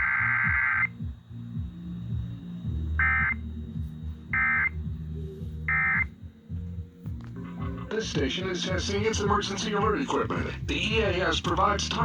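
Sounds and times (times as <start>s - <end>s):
warbling two-tone data bursts: 0.0s - 3.6s, 4.3s - 4.8s, 5.6s - 6.1s.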